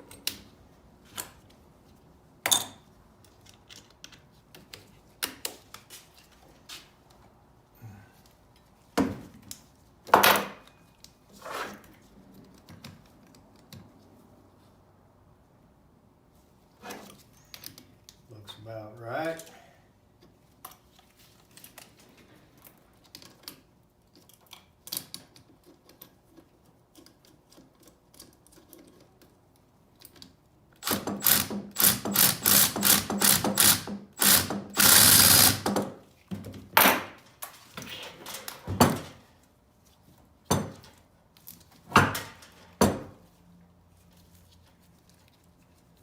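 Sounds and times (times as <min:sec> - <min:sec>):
ratchet wrench clicking: 0:30.8 - 0:35.7.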